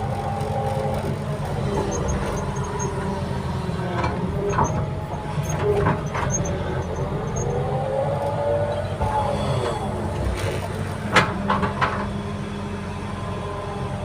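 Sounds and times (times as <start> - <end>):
heavy machine engine running: 0.0 - 14.0
squealing sliding tones: 1.6 - 3.2, 4.4 - 7.8.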